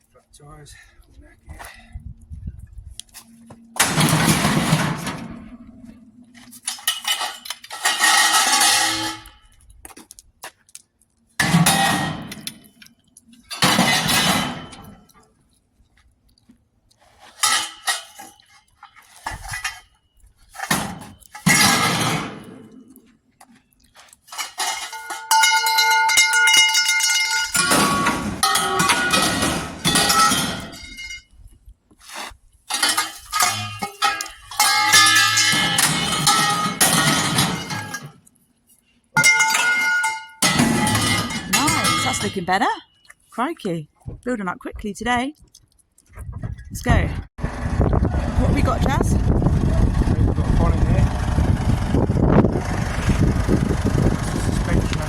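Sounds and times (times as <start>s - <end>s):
scrap metal crashing: 3.8s - 9.4s, 11.4s - 12.8s, 13.4s - 15.2s, 17.2s - 19.9s, 20.5s - 23.0s, 24.3s - 31.2s, 32.7s - 38.3s, 39.2s - 42.6s.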